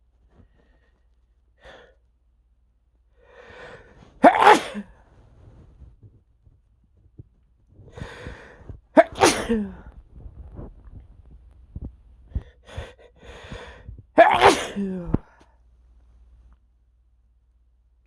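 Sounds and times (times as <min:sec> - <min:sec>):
drawn-in breath: 0:03.2 - 0:04.2, 0:07.8 - 0:08.8, 0:12.3 - 0:14.0
man sneezing: 0:04.2 - 0:04.9, 0:09.0 - 0:09.8, 0:14.2 - 0:15.0.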